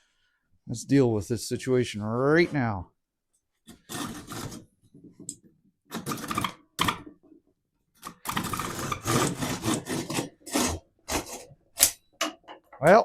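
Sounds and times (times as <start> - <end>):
hand saw cutting wood: 3.7 - 4.7, 8.1 - 11.9.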